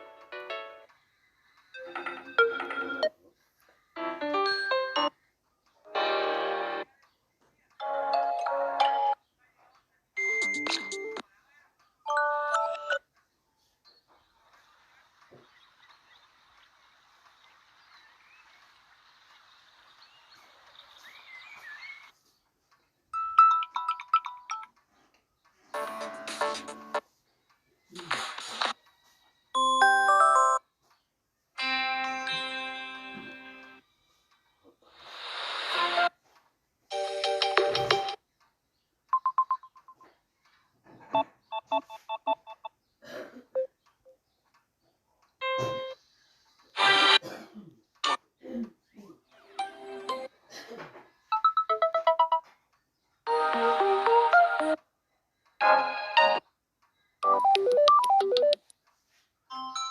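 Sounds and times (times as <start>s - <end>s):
nature sound with chirping calls: 13.1s - 23.2s
phone beeps: 39.2s - 40.0s, 41.1s - 42.8s, 57.2s - 58.6s.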